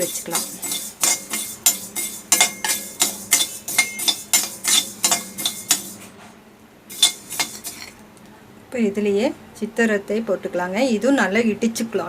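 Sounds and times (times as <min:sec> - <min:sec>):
stirrer scraping seeds in pan: 0:00.0 - 0:06.2, 0:06.9 - 0:08.0.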